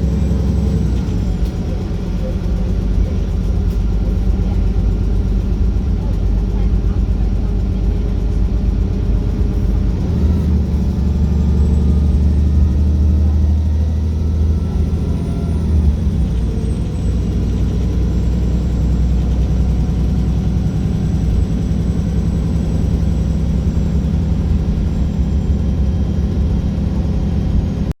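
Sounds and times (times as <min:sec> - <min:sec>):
bus diesel engine rumbling: 0:00.0 - 0:28.0.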